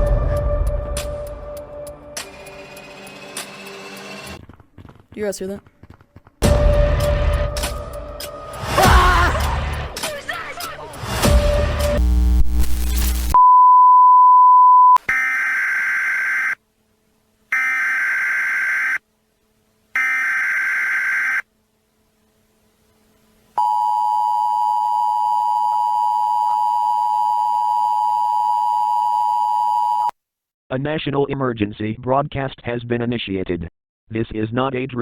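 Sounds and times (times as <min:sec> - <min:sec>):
harsh static: 0:11.6 - 0:13.4
buzzy data bursts: 0:11.9 - 0:13.4.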